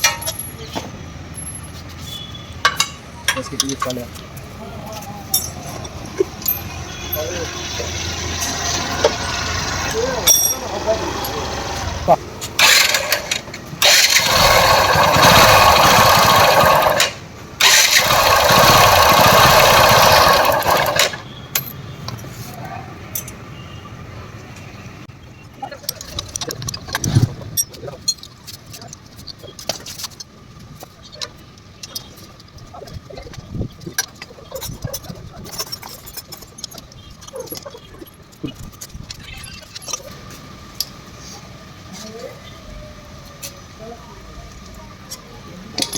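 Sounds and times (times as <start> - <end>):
motorcycle engine being cranked: 12.6 - 21.2
metallic clinks and knocks: 23.1 - 23.4.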